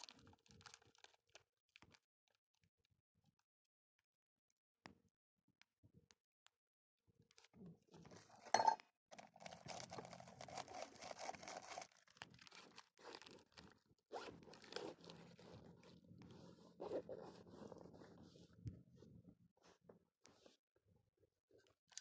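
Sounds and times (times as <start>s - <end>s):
crunching and scraping handling: 8.0s - 18.5s.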